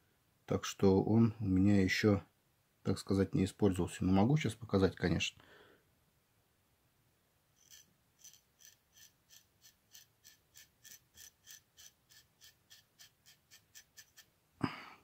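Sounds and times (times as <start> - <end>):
knife blade scraping hair: 7.6 - 14.3.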